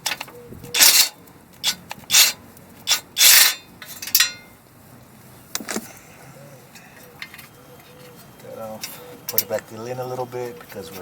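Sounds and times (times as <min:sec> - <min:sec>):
hand tool rasping on metal: 0:00.8 - 0:03.6.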